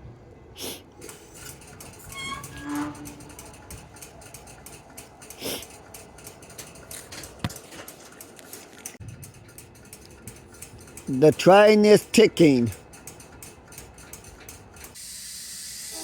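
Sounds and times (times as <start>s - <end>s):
train ticking and clicking: 0.8s - 15.2s.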